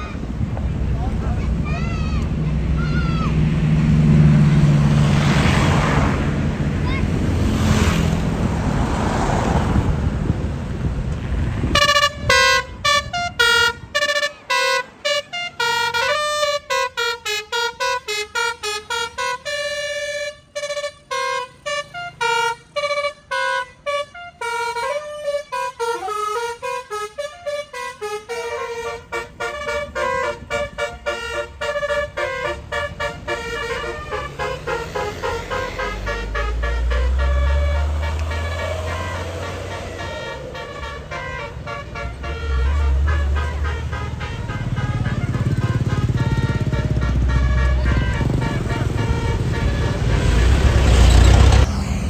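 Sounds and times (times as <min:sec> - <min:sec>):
musical bus horn melody: 0:11.4 - 0:51.8
rushing noise: 0:32.5 - 0:44.2, 0:46.6 - 0:52.0.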